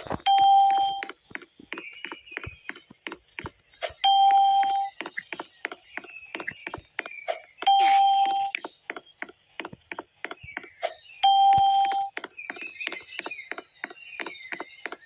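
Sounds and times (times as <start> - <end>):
fast irregular clicking: 0.0 - 15.0
steady beeps: 0.2 - 1.2, 4.0 - 5.0, 7.6 - 8.6, 11.2 - 12.2.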